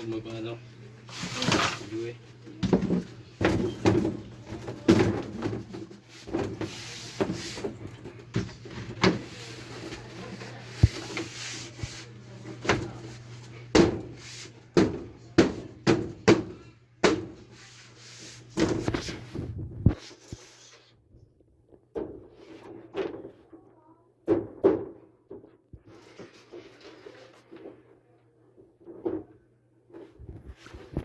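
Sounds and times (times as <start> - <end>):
knocks and thuds on wood: 13.7 - 14.2, 14.8 - 17.4.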